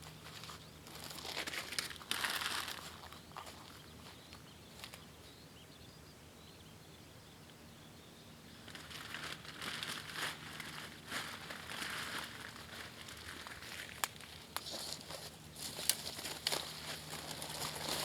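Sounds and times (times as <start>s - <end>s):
dry material rustling and crinkling: 0.2s - 4.2s, 8.6s - 18.0s.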